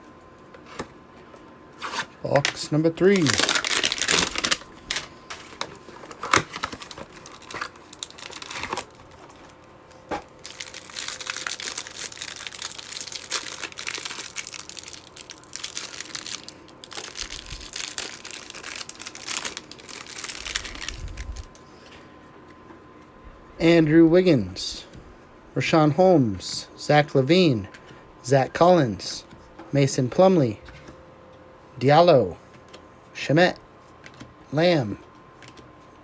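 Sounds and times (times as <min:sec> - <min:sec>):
plastic wrapping crinkling: 0:02.4 - 0:21.6
cardboard box tearing: 0:03.2 - 0:08.9.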